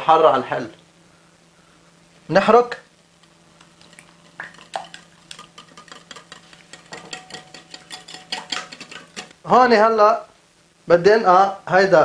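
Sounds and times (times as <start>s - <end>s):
utensil stirring in bowl: 3.1s - 9.4s.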